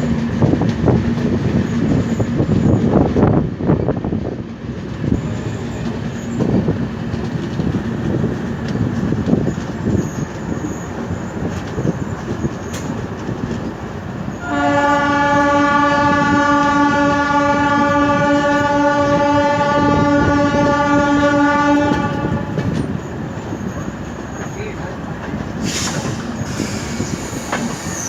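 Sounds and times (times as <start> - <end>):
train rumbling at speed: 0.0 - 28.0
locomotive horn blast: 14.4 - 22.8.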